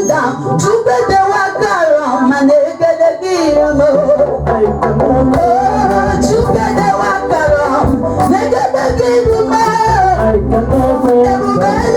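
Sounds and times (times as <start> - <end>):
instrumental backing: 0.0 - 11.9
person singing melody: 0.0 - 11.9
low bass line: 3.5 - 11.9
drum hits: 5.0 - 9.7.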